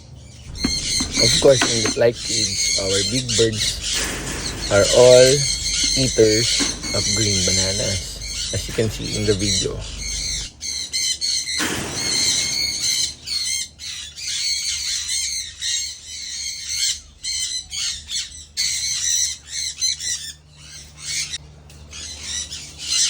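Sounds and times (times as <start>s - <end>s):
parrots squawking: 0.5s - 23.0s.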